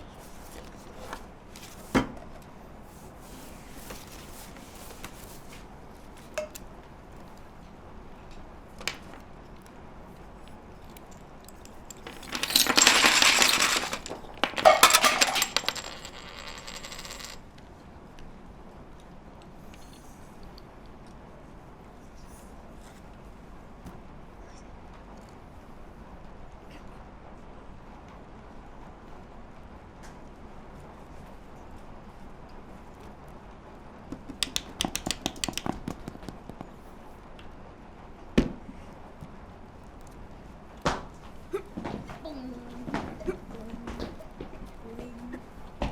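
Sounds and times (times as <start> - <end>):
small hard objects clattering: 11.0 - 17.4, 34.2 - 36.6
sharp foley clicks and taps: 34.1 - 36.7.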